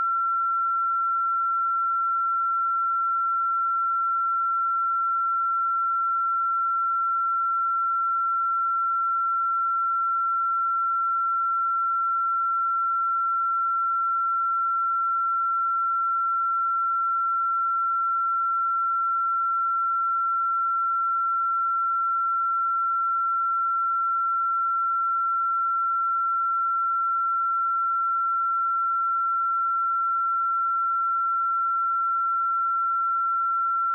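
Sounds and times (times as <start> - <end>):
sine-wave test tone: 0.0 - 33.9.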